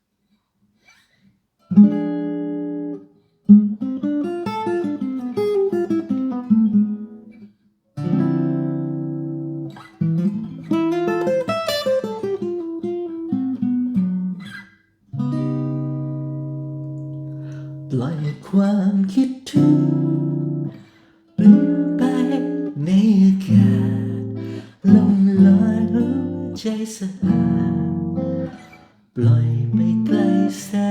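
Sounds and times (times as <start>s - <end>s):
fingerstyle acoustic guitar: 0.8s - 30.9s.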